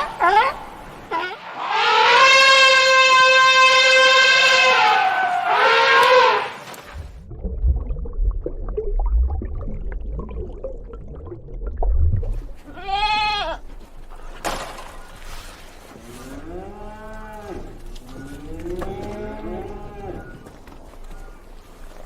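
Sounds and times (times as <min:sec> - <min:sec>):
low rumble: 0:06.9 - 0:12.7
farm animals bleating: 0:12.7 - 0:13.7.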